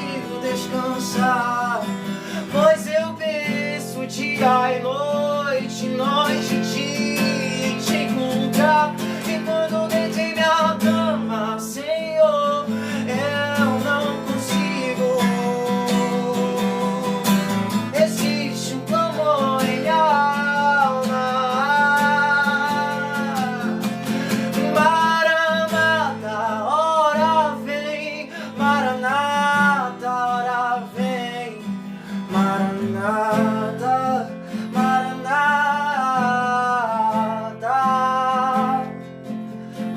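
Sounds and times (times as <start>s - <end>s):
person singing with vibrato: 0.0s - 39.0s
strummed acoustic guitar: 0.0s - 39.9s.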